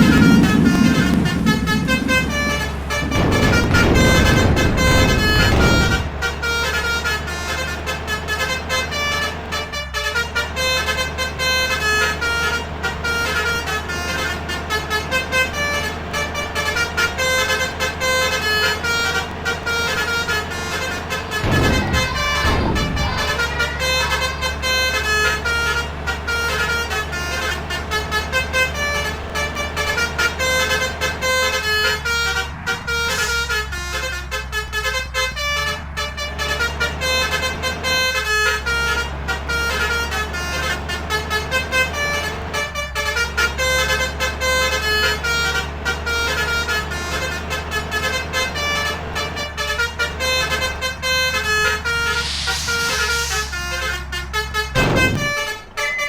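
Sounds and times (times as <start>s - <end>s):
bus engine running: 0.0s - 56.0s
musical air horn tune: 31.5s - 40.5s, 47.7s - 56.0s.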